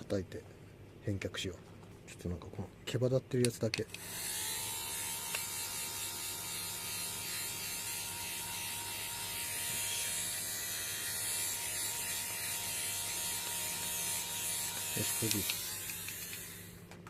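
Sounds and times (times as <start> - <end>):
fabric shaver motor whirring: 4.0 - 16.9.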